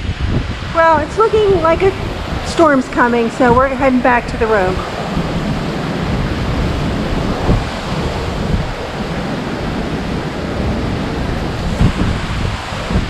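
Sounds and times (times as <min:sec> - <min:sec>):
strong wind rushing: 0:00.0 - 0:13.0
wind buffeting microphone: 0:00.0 - 0:13.0.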